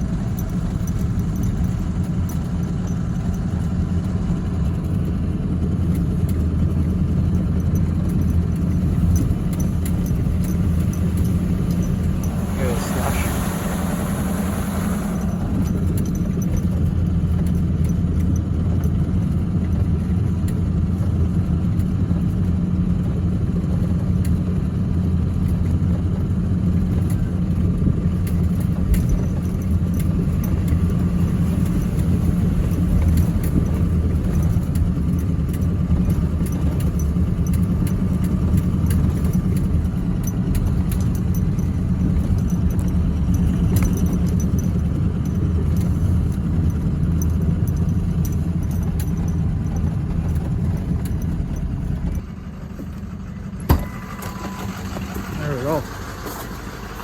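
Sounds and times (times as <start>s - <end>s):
pickup truck engine droning: 0.0s - 57.0s
load clinking and rattling: 5.9s - 20.1s, 26.9s - 56.8s.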